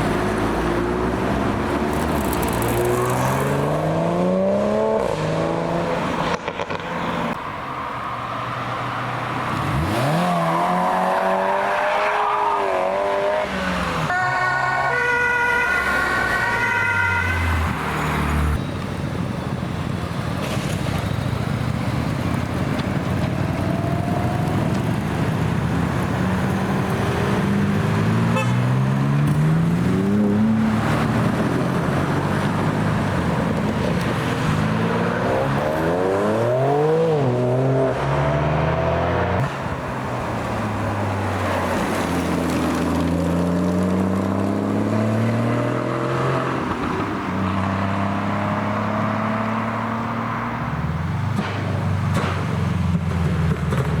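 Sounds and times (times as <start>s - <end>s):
cars accelerating: 0.0s - 14.2s, 23.2s - 51.4s
road and tyre noise: 0.0s - 54.0s.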